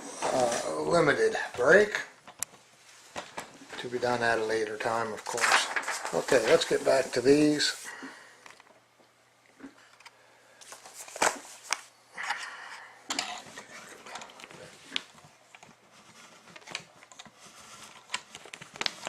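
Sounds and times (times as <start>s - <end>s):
rustling of cardboard and wrapping: 2.7s - 8.0s, 10.6s - 11.9s, 13.5s - 19.0s.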